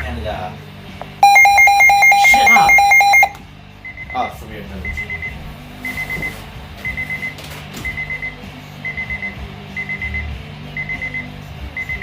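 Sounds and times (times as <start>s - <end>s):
high alarm beeps: 1.2s - 3.3s.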